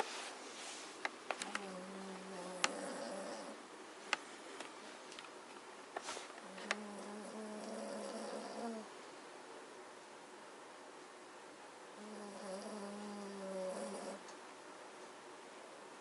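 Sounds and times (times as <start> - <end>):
dog snoring: 1.6 - 3.6, 6.4 - 8.9, 12.0 - 14.2.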